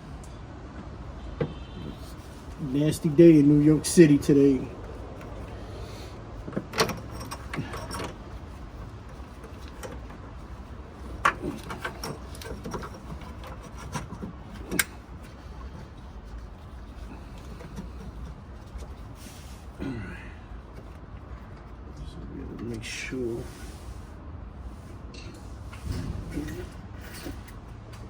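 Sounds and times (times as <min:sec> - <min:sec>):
steady low rumble: 0:01.9 - 0:28.0
tools clicking and knocking: 0:06.4 - 0:15.9.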